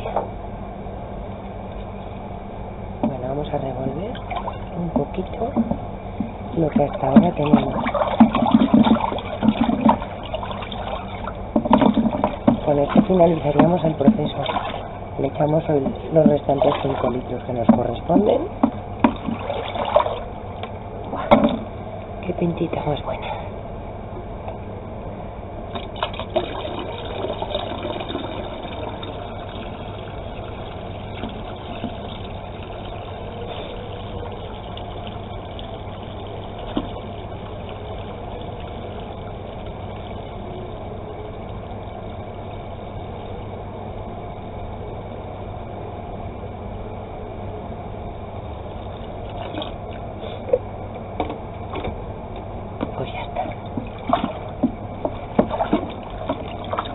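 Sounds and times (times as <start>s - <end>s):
water pouring into a bucket: 6.5s - 18.0s, 18.6s - 20.3s, 25.8s - 40.4s, 48.8s - 50.0s, 53.6s - 56.9s.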